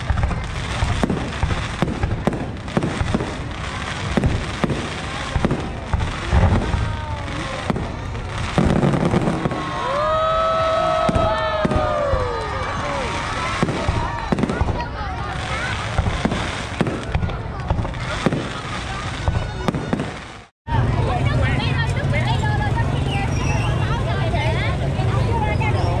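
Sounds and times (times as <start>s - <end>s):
firework bangs and crackles: 0.0s - 26.0s
falling firework whistles: 23.1s - 23.9s.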